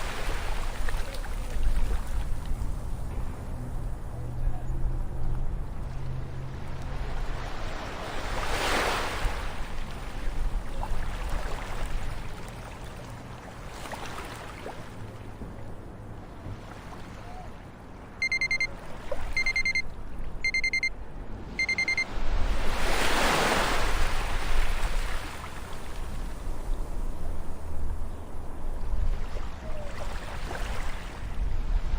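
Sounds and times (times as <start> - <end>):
ocean waves breaking: 0.0 - 31.9
timer alarm beeping: 18.2 - 18.7, 19.4 - 21.0, 21.6 - 22.1.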